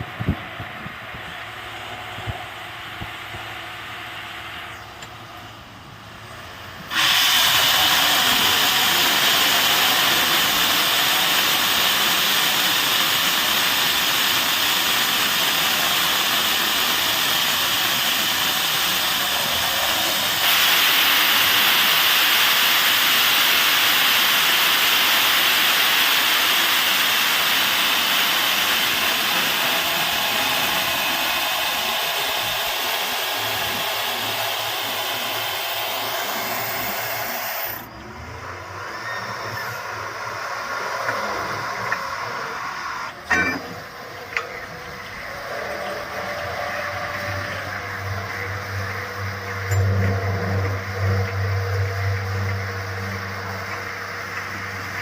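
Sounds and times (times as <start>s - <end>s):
water gushing from borewell: 6.9s - 37.9s.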